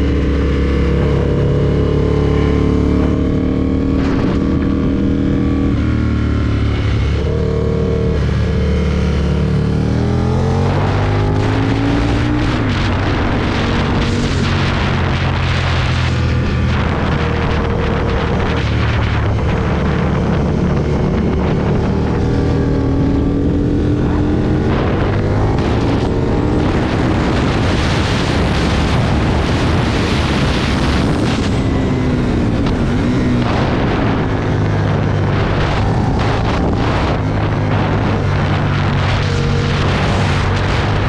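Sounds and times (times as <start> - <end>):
motorcycle engine running hard: 0.0 - 41.0
wind noise on microphone: 0.0 - 41.0.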